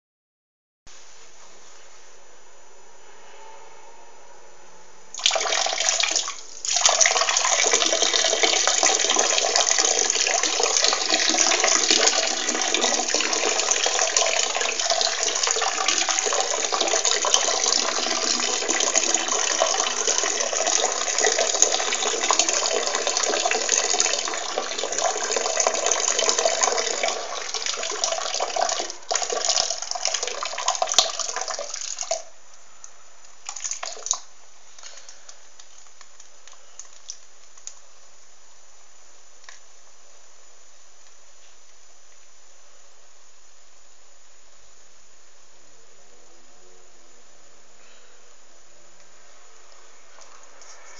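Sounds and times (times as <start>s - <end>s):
person urinating into water: 5.2s - 32.3s, 33.5s - 35.9s.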